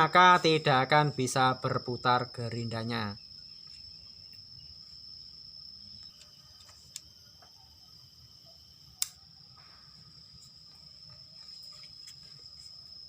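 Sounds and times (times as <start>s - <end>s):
crickets trilling: 0.0s - 13.0s
sharp clicks: 9.0s - 9.2s.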